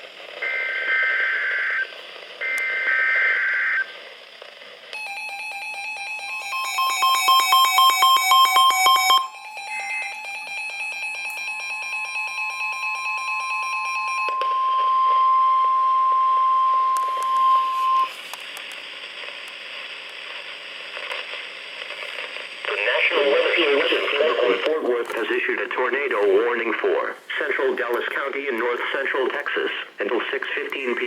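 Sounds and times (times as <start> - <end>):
radio static hiss: 0.0 - 5.0, 17.0 - 31.0
pulsing electronic alarm: 5.0 - 18.2
steady high alarm tone: 5.0 - 18.2.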